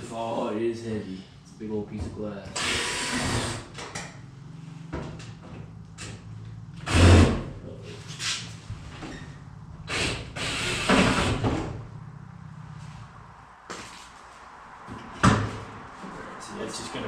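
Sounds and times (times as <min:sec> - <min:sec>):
loud thump: 0:15.2 - 0:15.6.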